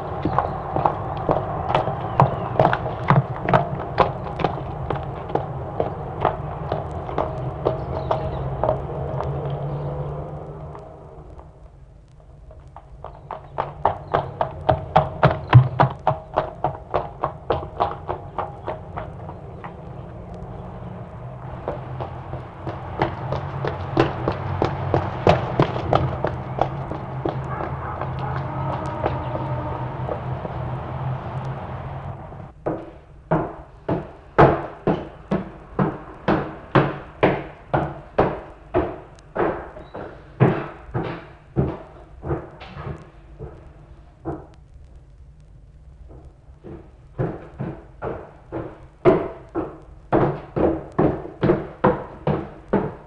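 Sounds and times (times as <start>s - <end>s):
heavy echoing thuds: 0.0s - 10.1s, 21.4s - 44.6s
horse hooves clip-clopping: 0.0s - 53.0s
low steady hum: 0.0s - 53.0s.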